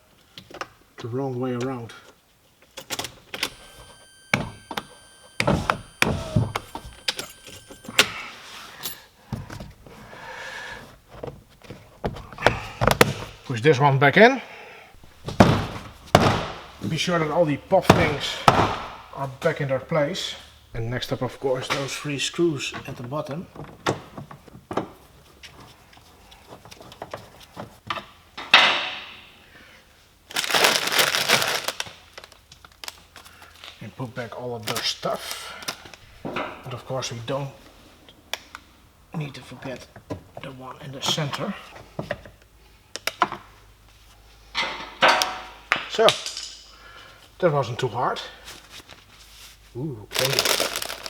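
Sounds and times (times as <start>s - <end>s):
rustling crackling noise: 48.8s - 51.0s.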